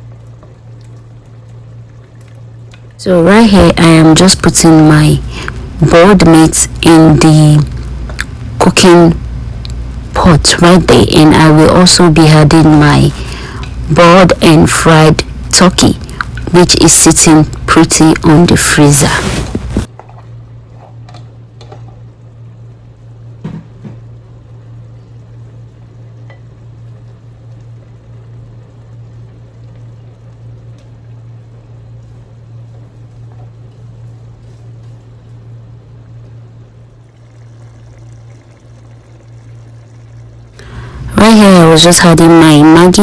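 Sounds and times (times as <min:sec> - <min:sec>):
soup bubbling in a pot: 0:00.0 - 0:03.0, 0:19.2 - 0:41.0
steady low hum: 0:00.0 - 0:43.0.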